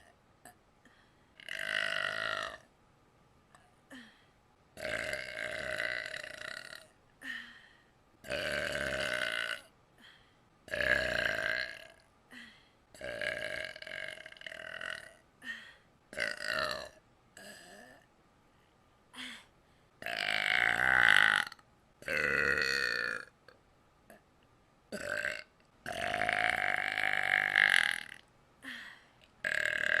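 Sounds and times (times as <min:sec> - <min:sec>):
person burping: 0:01.4 - 0:02.6, 0:04.8 - 0:07.4, 0:08.2 - 0:09.7, 0:10.7 - 0:15.2, 0:16.2 - 0:18.1, 0:20.0 - 0:23.3, 0:24.9 - 0:30.0.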